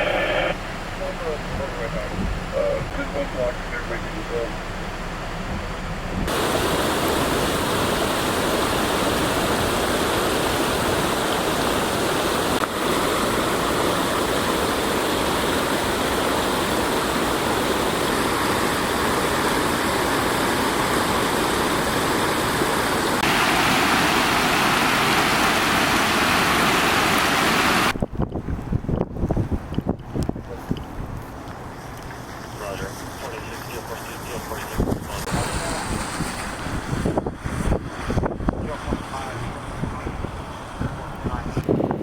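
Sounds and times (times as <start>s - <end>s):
floodwater rushing: 6.3s - 28.0s, 31.4s - 42.0s.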